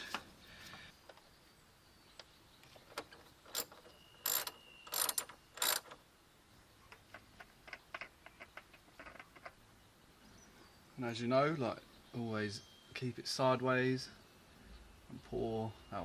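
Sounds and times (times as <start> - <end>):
tools clicking and knocking: 2.9 - 6.0.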